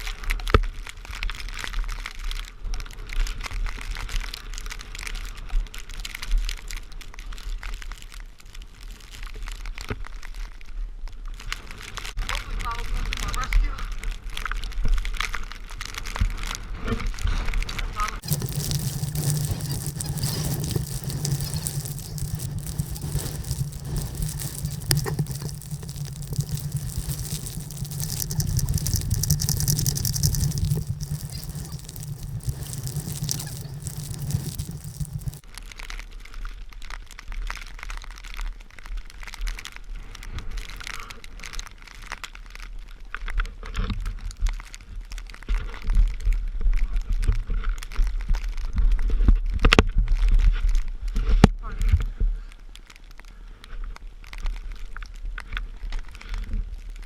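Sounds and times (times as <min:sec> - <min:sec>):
crackling noise: 0:18.2 - 0:35.4
footsteps crunching through snow: 0:18.2 - 0:35.4
scattered clicks: 0:18.2 - 0:35.4
wind rumbling on microphone: 0:18.2 - 0:35.4.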